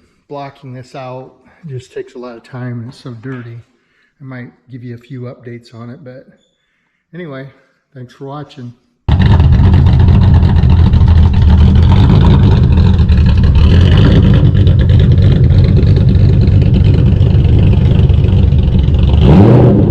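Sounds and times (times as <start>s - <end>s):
car engine running: 9.1s - 19.9s.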